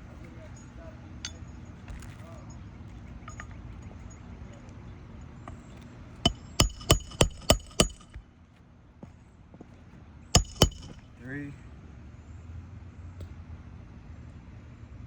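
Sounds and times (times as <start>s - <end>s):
hammer striking metal nail: 6.3s - 8.2s, 10.4s - 11.0s.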